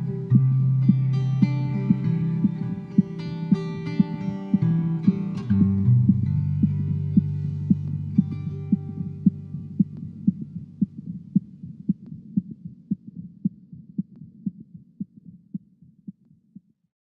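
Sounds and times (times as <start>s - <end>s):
song: 0.0s - 10.2s
heartbeat thumps: 0.0s - 16.7s.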